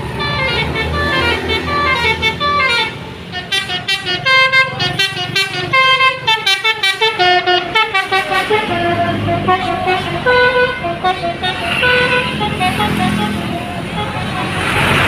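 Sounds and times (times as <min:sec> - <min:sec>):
multi-tone bus horn playing tune: 0:00.0 - 0:15.0.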